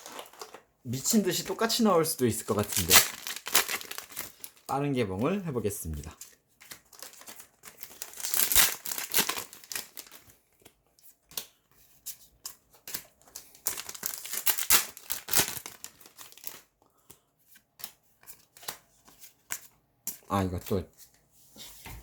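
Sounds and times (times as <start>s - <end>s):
foil wrappers crinkling and tearing: 0.0s - 4.7s, 6.6s - 10.4s, 12.8s - 16.7s.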